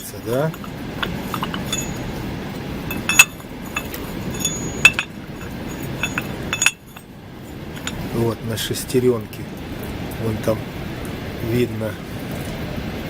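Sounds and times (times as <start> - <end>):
steel engine parts clinking: 0.0 - 8.2
steady background noise: 0.0 - 13.0.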